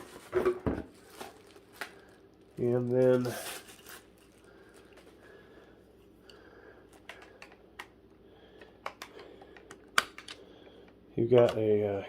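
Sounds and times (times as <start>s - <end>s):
soft plastic rustling: 0.0s - 5.7s
sharp plastic clicks and taps: 8.6s - 10.4s.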